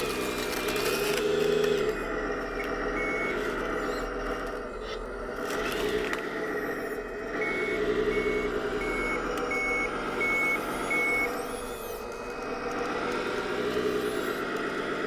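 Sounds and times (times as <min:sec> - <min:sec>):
reversing alarm beeping: 0:07.5 - 0:11.9.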